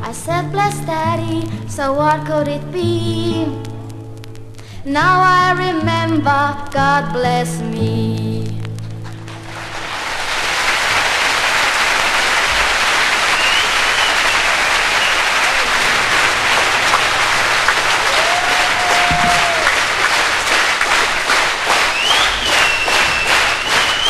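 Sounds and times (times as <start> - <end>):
audience applauding: 9.0 - 24.0.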